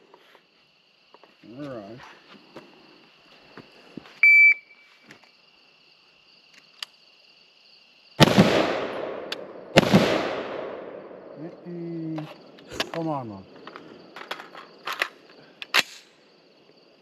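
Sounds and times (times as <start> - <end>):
insects chirping: 0.0 - 17.0
echoing gunshots: 8.2 - 11.4.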